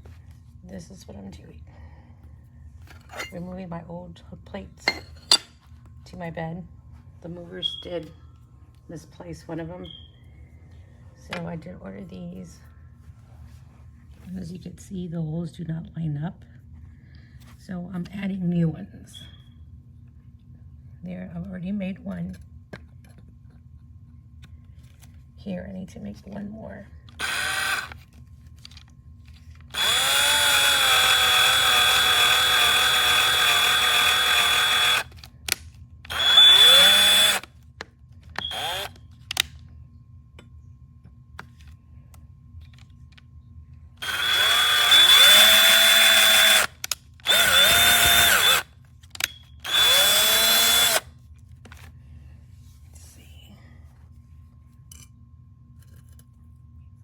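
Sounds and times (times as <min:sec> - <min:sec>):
cordless drill whine: 0:27.2 - 0:28.0, 0:29.7 - 0:35.2, 0:36.1 - 0:37.5, 0:38.4 - 0:39.0, 0:44.0 - 0:48.6, 0:49.2 - 0:51.1.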